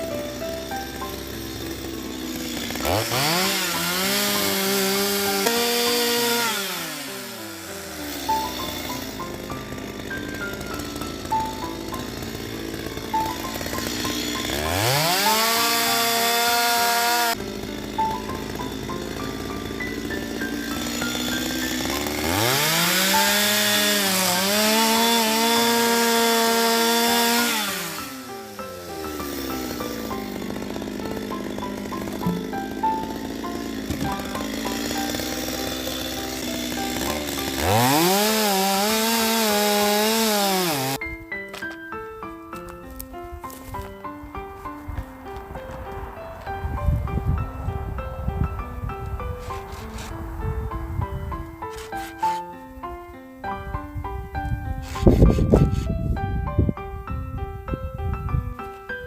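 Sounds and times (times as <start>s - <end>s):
chainsaw revving: 0.0s - 41.0s, 49.4s - 50.2s, 51.7s - 52.6s, 54.8s - 55.8s
background music: 0.0s - 59.0s.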